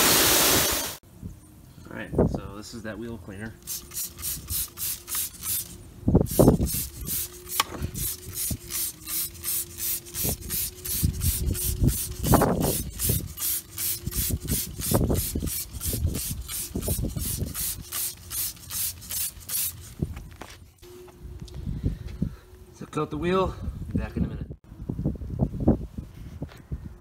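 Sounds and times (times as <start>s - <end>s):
spray bottle hissing squirts: 3.6s - 20.0s.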